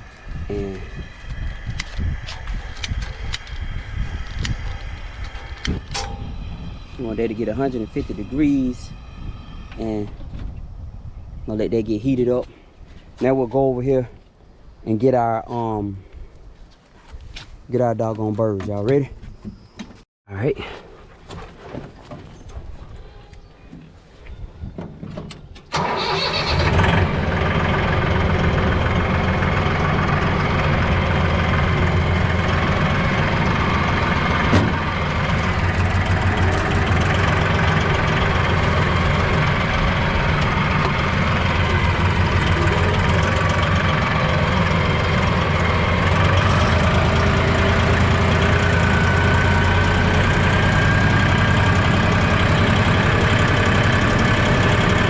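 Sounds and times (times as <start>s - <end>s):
vehicle engine starting and running: 0.0s - 10.8s, 25.6s - 55.0s.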